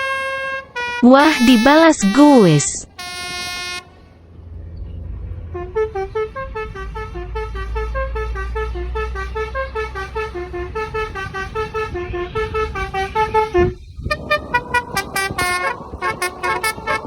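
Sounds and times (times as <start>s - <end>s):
bus musical horn tune: 0.0s - 4.1s, 5.5s - 17.0s
low rumble: 13.8s - 17.0s.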